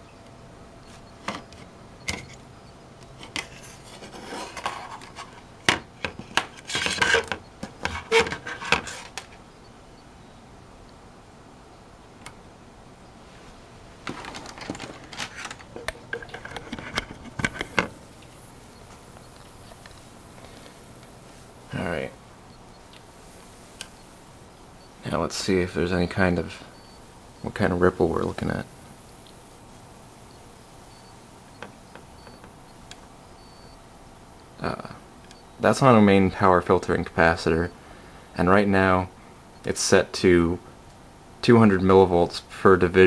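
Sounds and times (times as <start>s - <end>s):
hardware clicks and taps: 15.8s - 21.2s
high-pitched electronic whine: 15.8s - 43.0s.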